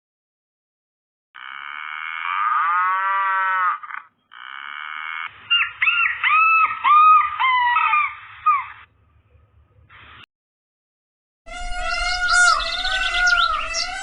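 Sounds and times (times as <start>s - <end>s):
short high fowl calls: 11.6s - 14.0s.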